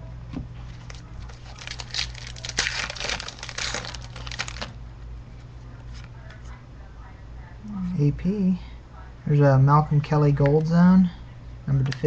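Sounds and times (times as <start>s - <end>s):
foil wrapper crinkling and tearing: 0.7s - 4.8s.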